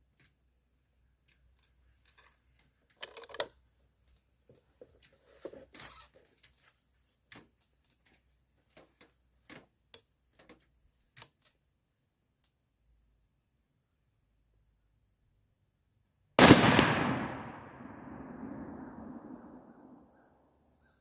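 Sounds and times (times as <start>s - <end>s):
handling clicks and rustles: 0.0s - 11.7s.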